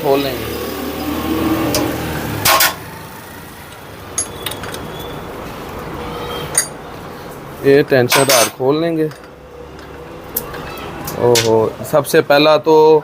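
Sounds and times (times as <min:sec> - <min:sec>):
metal tools clanking on engine: 0:01.7 - 0:02.8, 0:03.7 - 0:05.2, 0:06.4 - 0:06.8, 0:08.0 - 0:11.7
light metallic clinks: 0:03.7 - 0:05.1.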